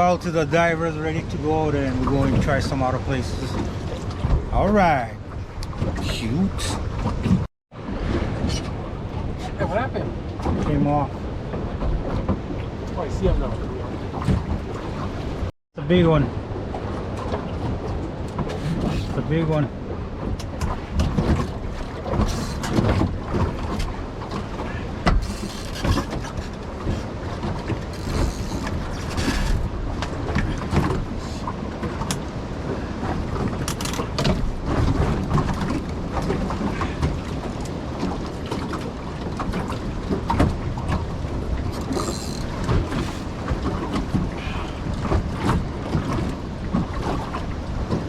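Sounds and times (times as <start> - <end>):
waves slapping boat hull: 0.0 - 48.0
wind on microphone: 16.1 - 48.0.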